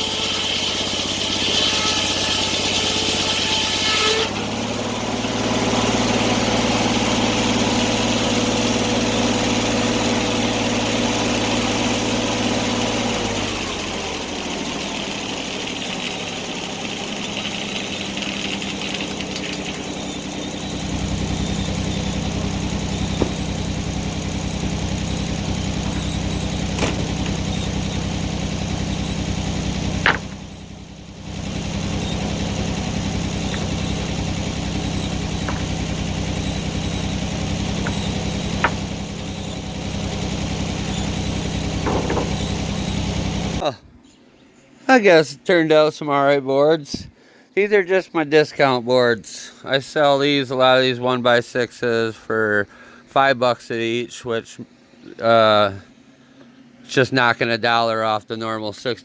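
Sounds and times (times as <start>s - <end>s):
sawmill engine running: 0.0s - 43.6s.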